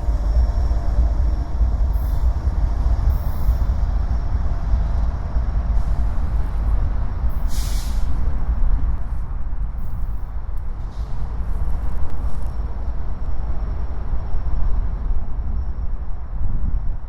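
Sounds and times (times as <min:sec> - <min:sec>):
train wheels rumbling on rail: 0:00.0 - 0:17.0
brief high hiss: 0:07.5 - 0:08.2.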